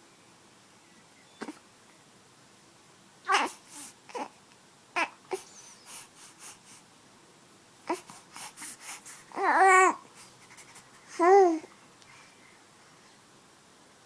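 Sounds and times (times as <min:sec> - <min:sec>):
baby hiccuping: 0:01.4 - 0:01.6, 0:03.3 - 0:04.3
baby vocal sound: 0:01.4 - 0:01.6, 0:03.3 - 0:04.4, 0:05.0 - 0:06.6, 0:07.8 - 0:11.7.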